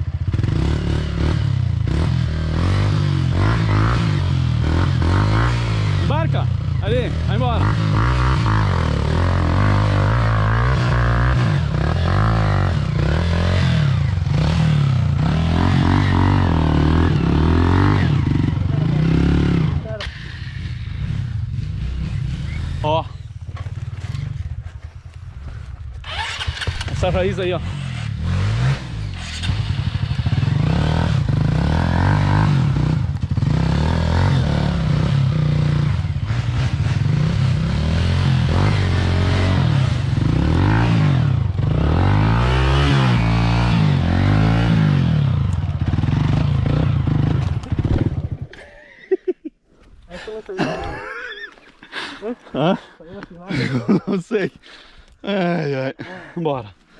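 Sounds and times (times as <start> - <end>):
motorcycle engine revving: 0.0 - 48.8.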